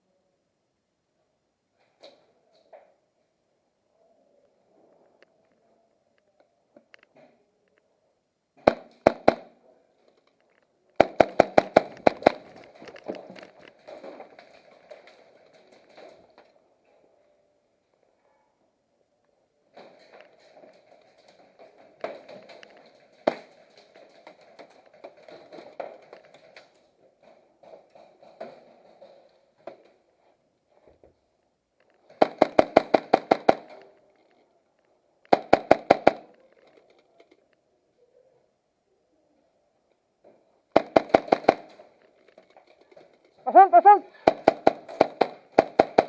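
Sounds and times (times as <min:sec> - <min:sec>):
sharp crack: 0:08.6 - 0:09.5, 0:11.0 - 0:16.2, 0:35.2 - 0:36.4, 0:40.7 - 0:41.9
airsoft guns firing: 0:08.6 - 0:09.6, 0:11.0 - 0:12.9, 0:23.2 - 0:23.6, 0:32.1 - 0:33.8, 0:35.3 - 0:36.3, 0:40.7 - 0:41.9, 0:43.9 - 0:46.0
footsteps: 0:10.4 - 0:16.5.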